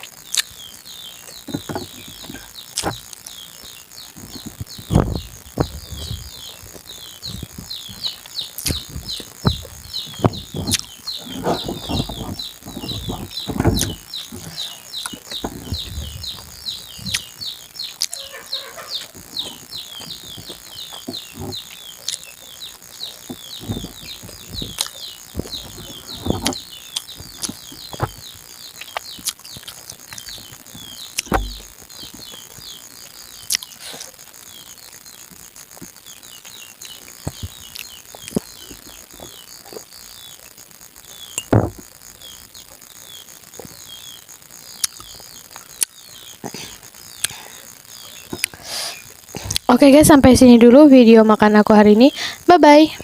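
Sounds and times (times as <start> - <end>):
close-up chewing and eating: 0.0 - 3.4, 4.1 - 32.6, 33.4 - 40.6, 44.7 - 49.7
small birds chirping: 0.0 - 53.0
loud knock: 31.3 - 31.6.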